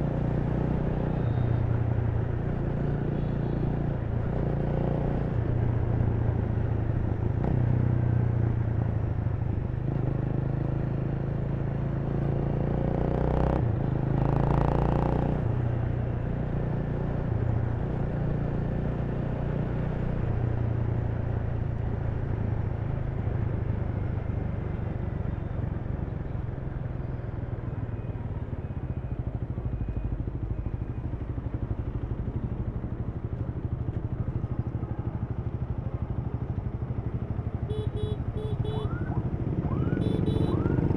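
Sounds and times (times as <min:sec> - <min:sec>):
motorcycle engine running: 0:28.2 - 0:40.9.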